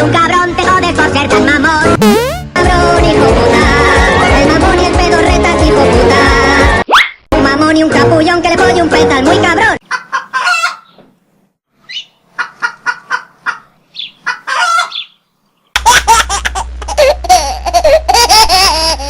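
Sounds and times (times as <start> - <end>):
chicken clucking: 9.8 - 11.0, 12.0 - 15.1.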